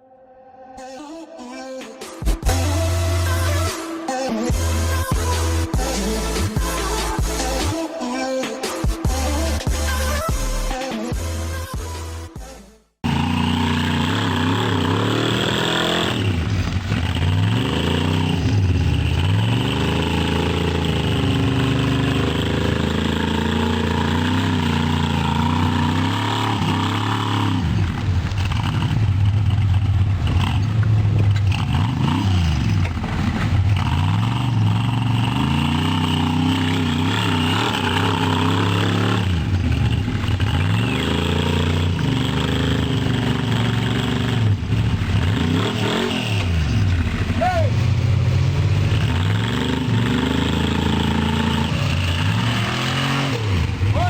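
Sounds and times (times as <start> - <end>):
car engine revving: 13.0 - 54.0.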